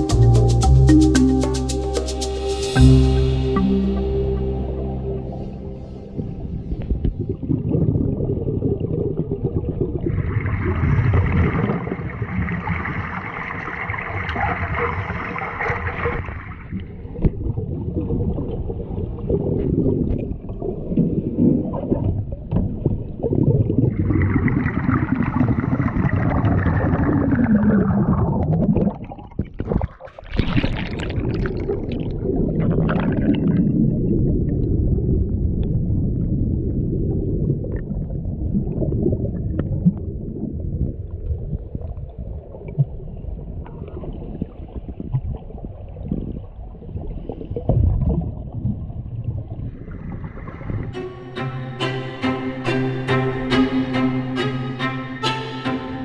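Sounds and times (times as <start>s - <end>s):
steady low rumble: 0.0s - 10.3s
water gurgling and sloshing: 0.7s - 50.9s.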